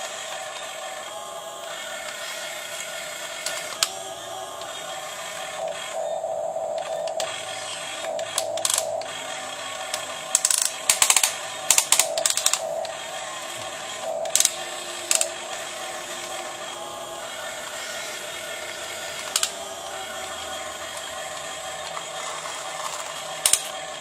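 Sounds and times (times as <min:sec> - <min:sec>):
small electric motors whining: 0:00.0 - 0:24.0
sharp clicks and scrapes: 0:21.0 - 0:23.8.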